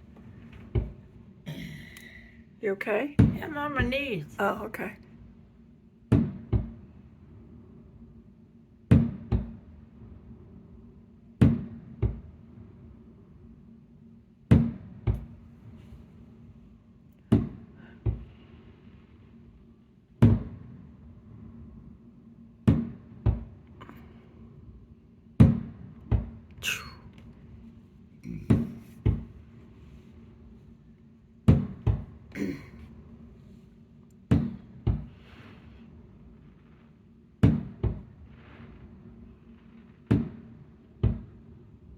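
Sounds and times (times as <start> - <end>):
steady low hum: 0.0 - 41.9
fireworks bursting: 3.2 - 4.4.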